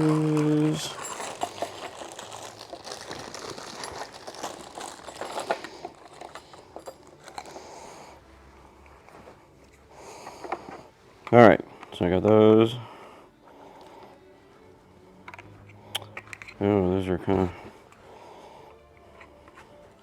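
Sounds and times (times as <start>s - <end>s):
plastic pieces clicking and rattling: 0.0s - 7.6s
crinkling: 0.0s - 8.2s.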